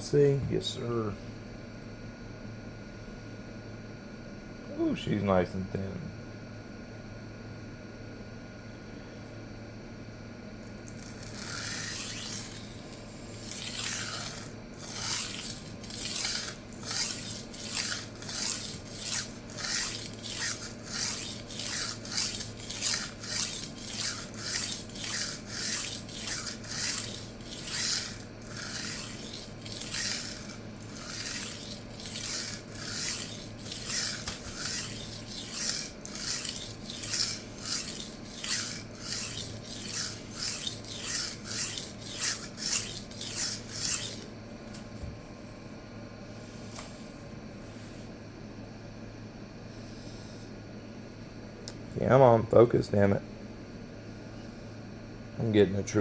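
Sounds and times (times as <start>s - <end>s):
knife rasping on sharpening plate: 11.0s - 44.3s.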